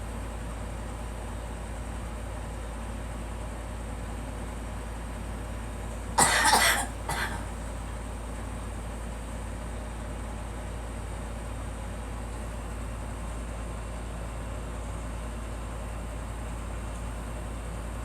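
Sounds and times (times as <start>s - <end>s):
girl coughing: 6.2s - 7.5s
background hum: 6.2s - 7.9s.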